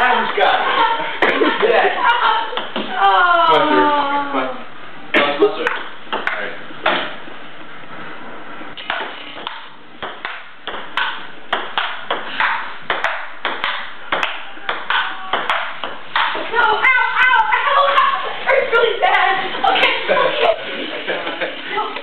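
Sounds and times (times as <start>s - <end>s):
ping pong ball clicking: 8.9s - 16.4s.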